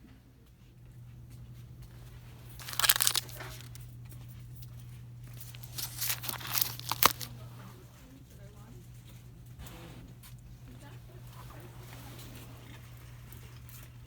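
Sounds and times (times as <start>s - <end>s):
low electrical hum: 0.0s - 14.0s
plastic packaging crinkling: 2.0s - 3.8s, 5.3s - 7.4s.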